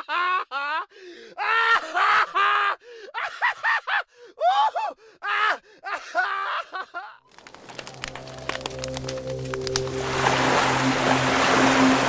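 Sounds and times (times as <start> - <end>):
gasping breaths: 0.9 - 1.4.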